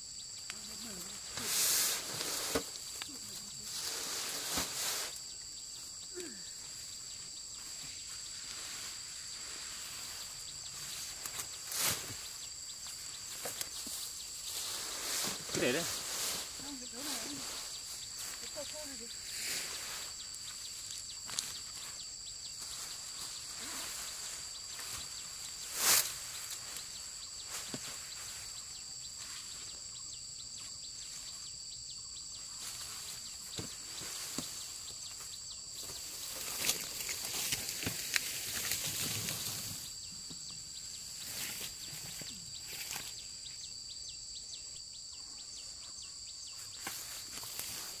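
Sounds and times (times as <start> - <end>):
dry stalks rustling and crackling: 32.6 - 39.9.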